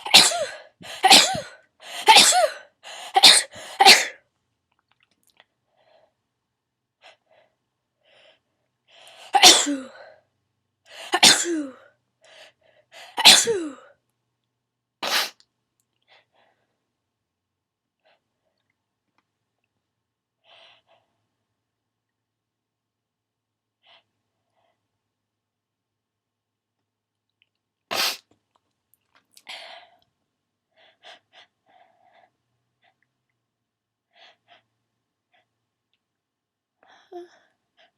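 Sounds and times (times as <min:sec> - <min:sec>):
person sneezing: 0:00.0 - 0:02.6, 0:03.2 - 0:04.2, 0:09.3 - 0:10.0, 0:13.2 - 0:13.9, 0:15.0 - 0:15.4, 0:27.9 - 0:28.3
quick breaths: 0:00.0 - 0:03.9.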